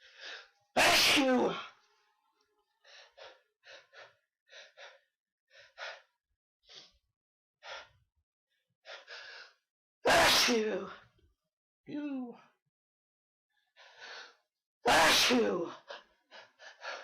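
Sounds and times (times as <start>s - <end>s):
person sneezing: 10.1s - 10.6s.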